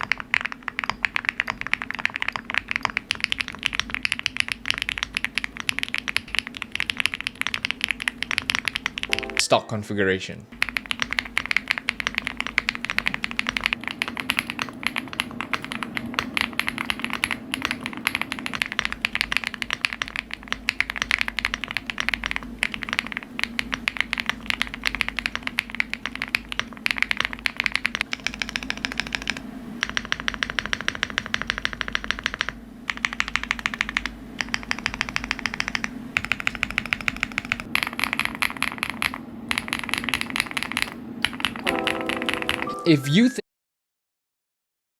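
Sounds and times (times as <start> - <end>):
mechanical keyboard typing: 0.0 - 9.4, 10.6 - 42.8.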